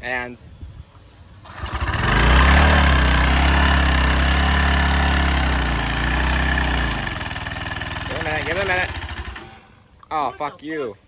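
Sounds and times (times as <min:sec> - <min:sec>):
small gasoline engine running: 0:01.4 - 0:09.7.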